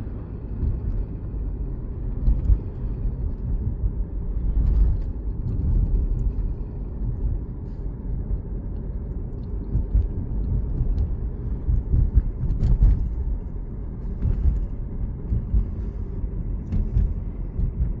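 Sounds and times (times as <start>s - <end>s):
engine ticking clicks: 7.0s - 18.0s.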